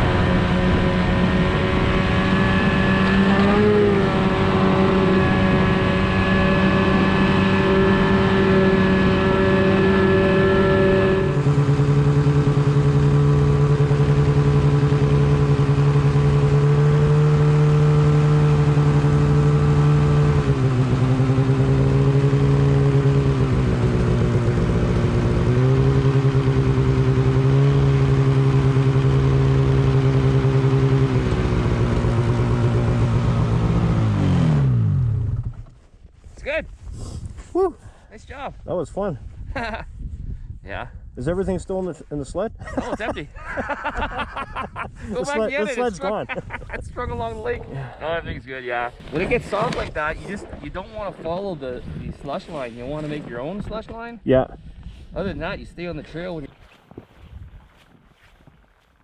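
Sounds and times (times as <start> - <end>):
snowmobile engine running: 0.0 - 35.7, 42.8 - 54.4.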